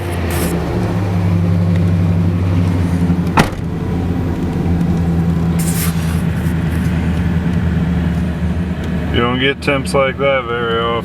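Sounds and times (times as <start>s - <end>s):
car engine idling: 0.0s - 8.8s.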